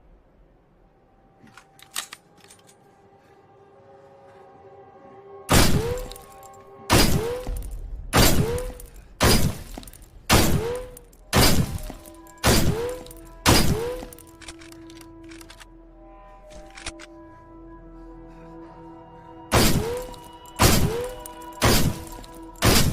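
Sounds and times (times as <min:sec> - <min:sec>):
faint humming tones: 0:00.0 - 0:22.9
shotgun shots echoing: 0:05.5 - 0:06.2, 0:06.9 - 0:14.2, 0:19.5 - 0:22.9.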